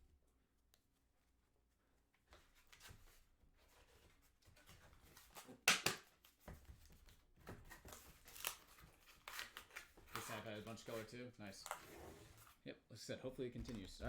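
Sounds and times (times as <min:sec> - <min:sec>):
cards and packaging rustling: 0:02.4 - 0:12.6, 0:13.4 - 0:14.0.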